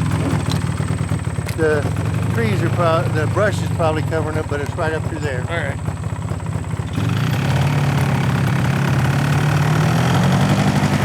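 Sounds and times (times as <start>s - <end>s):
truck engine pulling away: 0.0s - 11.0s.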